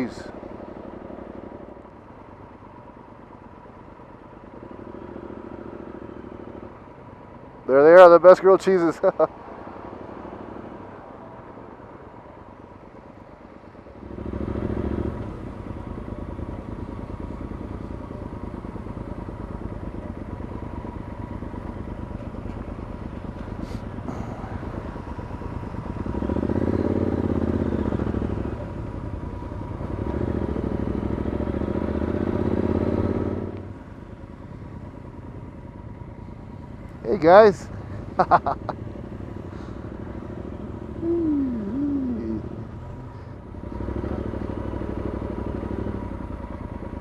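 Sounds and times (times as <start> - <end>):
motorcycle engine running: 13.4 - 47.0.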